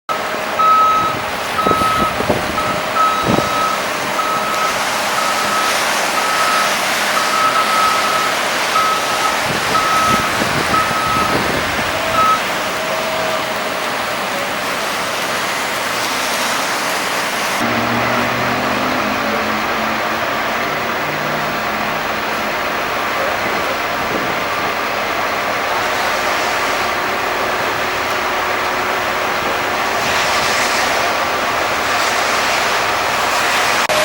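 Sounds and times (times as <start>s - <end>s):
engine and road noise: 0.0s - 34.0s
truck reversing alarm beeping: 0.1s - 16.7s.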